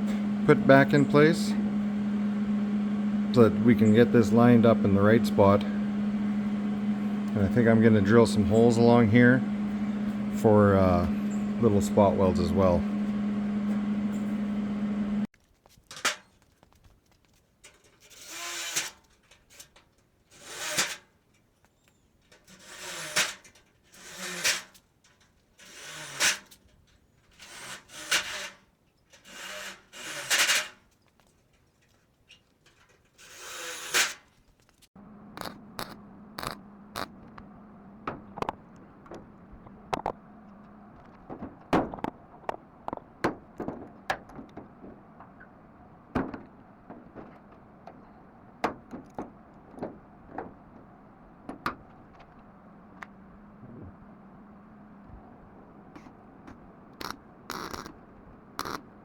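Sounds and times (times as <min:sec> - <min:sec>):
steady low hum: 0:00.0 - 0:15.3, 0:35.0 - 0:59.0
electric drill boring metal: 0:25.6 - 0:26.4, 0:27.4 - 0:28.6, 0:29.2 - 0:30.6, 0:33.2 - 0:34.2
sharp ticks: 0:35.4 - 0:37.1, 0:57.0 - 0:58.0, 0:58.6 - 0:58.8.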